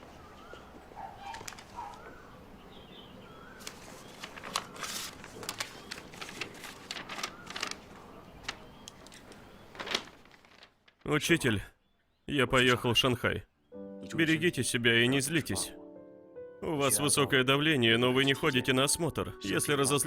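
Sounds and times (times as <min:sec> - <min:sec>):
small birds chirping: 0:00.0 - 0:15.8
sharp clicks and rustles: 0:01.2 - 0:02.1, 0:03.6 - 0:11.1.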